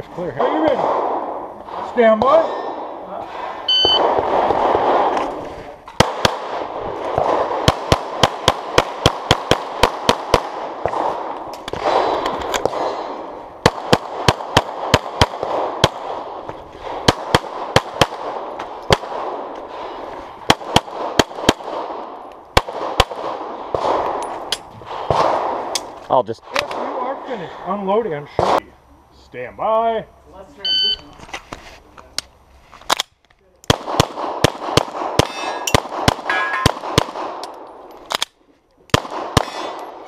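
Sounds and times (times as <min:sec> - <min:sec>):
pistol gunshots: 0:00.5 - 0:25.9, 0:33.7 - 0:38.2, 0:38.9 - 0:40.0.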